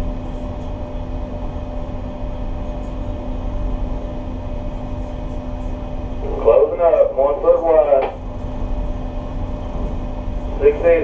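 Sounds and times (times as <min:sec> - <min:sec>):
diesel engines droning: 0:06.2 - 0:08.2, 0:10.5 - 0:11.0.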